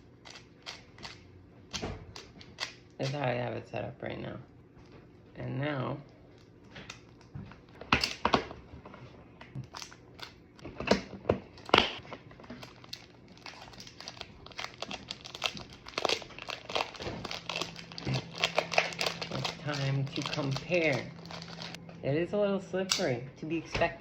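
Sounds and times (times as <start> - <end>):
plastic packaging crinkling: 11.5 - 21.8.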